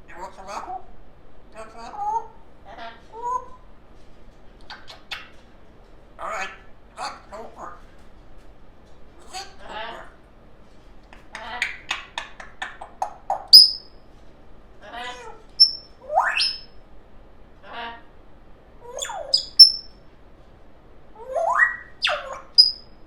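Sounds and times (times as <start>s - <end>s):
parrot buzzy calls: 6.2s - 7.8s, 11.4s - 13.9s, 14.8s - 16.8s, 18.8s - 20.0s, 21.2s - 23.0s
parrot whistles and chirps: 13.3s - 13.9s, 15.6s - 16.7s, 18.9s - 20.0s, 21.2s - 22.9s.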